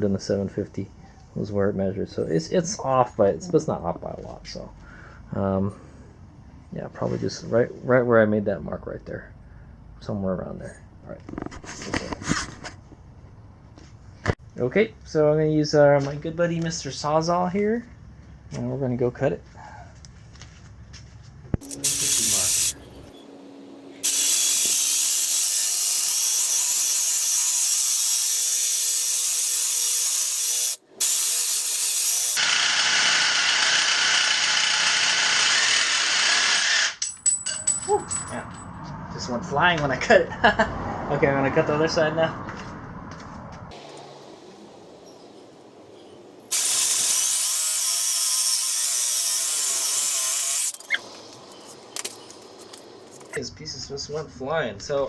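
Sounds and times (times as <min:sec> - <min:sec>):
reciprocating saw cutting metal: 0:21.6 - 0:37.0, 0:43.7 - 0:53.4.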